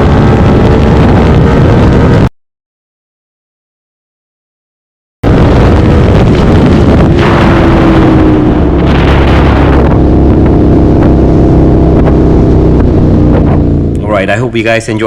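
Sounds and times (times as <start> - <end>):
motorcycle engine accelerating: 0.0 - 2.3, 5.2 - 14.3
wind rush on microphone: 0.0 - 2.3, 5.2 - 14.0.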